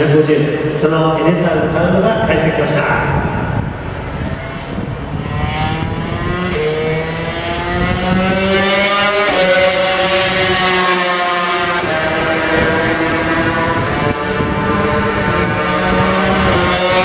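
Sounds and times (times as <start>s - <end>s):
racing motorcycle engines: 0.0s - 17.0s.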